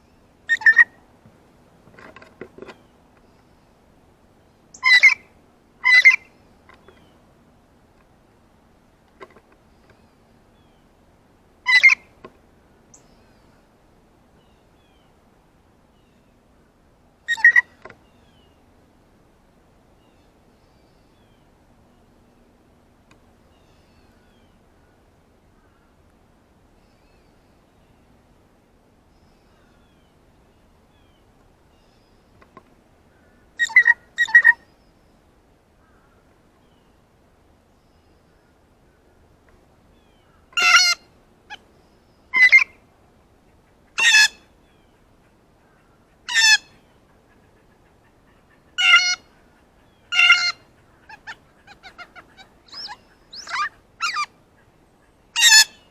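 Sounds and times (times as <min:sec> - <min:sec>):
blue jay call: 0:00.5 - 0:01.0, 0:04.7 - 0:07.0, 0:11.7 - 0:12.2, 0:17.3 - 0:17.8, 0:33.6 - 0:34.6, 0:40.6 - 0:41.6, 0:42.3 - 0:42.8, 0:43.9 - 0:44.5, 0:46.2 - 0:54.4, 0:55.3 - 0:55.9.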